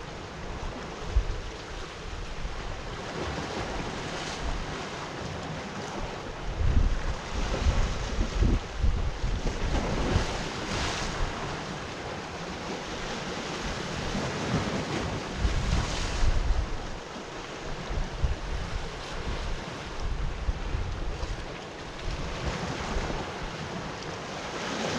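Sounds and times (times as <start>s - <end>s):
sea waves breaking on shore: 0.0s - 24.9s
wind buffeting microphone: 6.0s - 11.5s, 13.6s - 23.7s.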